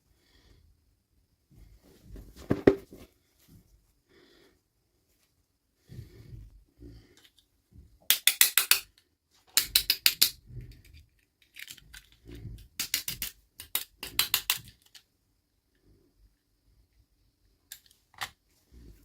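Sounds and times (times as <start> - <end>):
handling noise: 2.0 - 3.1.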